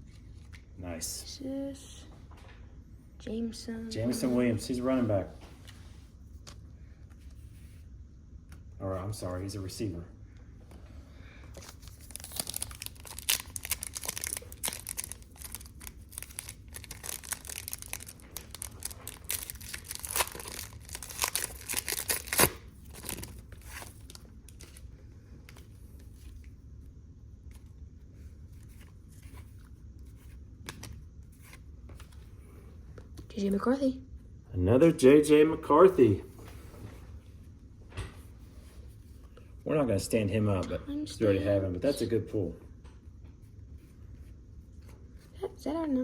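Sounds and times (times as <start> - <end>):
wrapper crinkling and tearing: 11.6 - 24.9.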